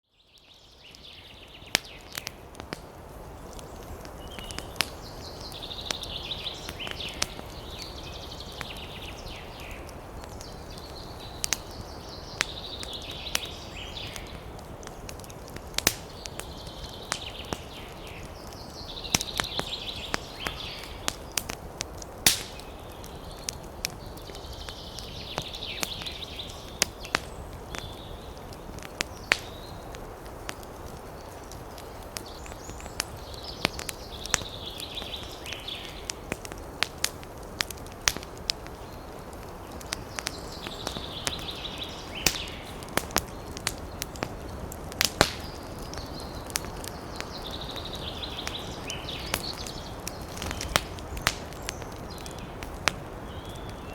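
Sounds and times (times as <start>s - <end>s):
campfire crackling and popping: 0.3s - 53.9s
bird chirping: 38.8s - 44.2s, 45.4s - 52.6s.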